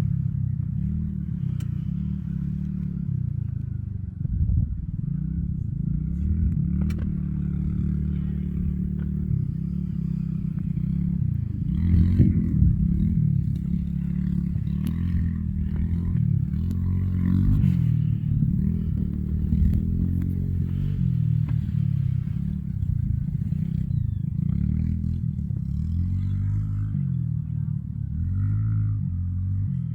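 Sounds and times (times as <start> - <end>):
engine running: 0.0 - 29.9
light clatter: 5.6 - 26.9.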